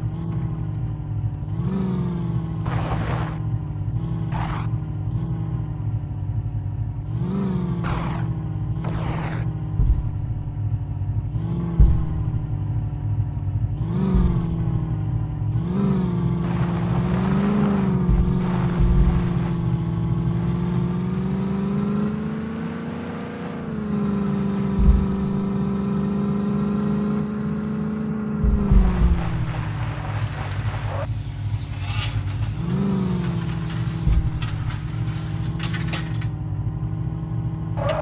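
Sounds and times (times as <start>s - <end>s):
car engine revving: 0.0s - 38.0s
short low thumps: 9.2s - 10.6s, 11.4s - 12.7s, 14.0s - 15.0s, 16.3s - 20.5s, 24.6s - 25.8s, 28.2s - 30.9s, 34.0s - 34.8s.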